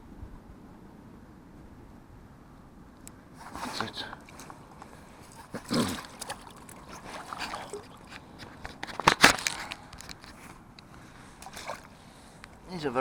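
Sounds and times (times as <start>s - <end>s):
water splashing and sloshing: 3.1s - 12.7s.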